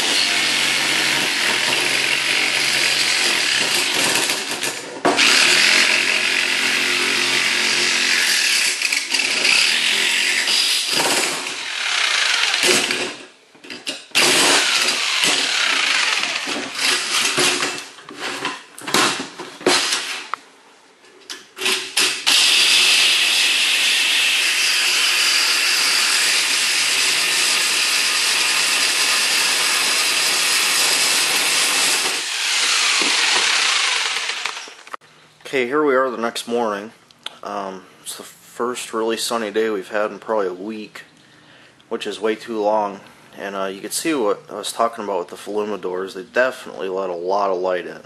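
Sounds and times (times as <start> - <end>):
power tool cutting steel: 0.0 - 4.2, 5.2 - 13.2, 14.2 - 17.4, 22.0 - 35.0.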